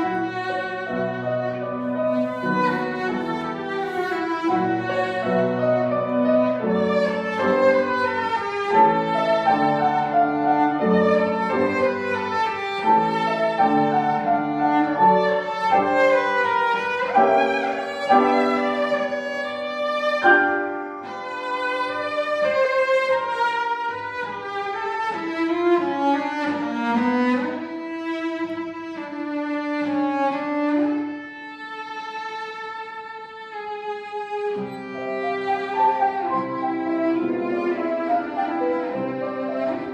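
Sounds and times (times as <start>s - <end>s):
cellos playing classical music: 0.0s - 39.9s.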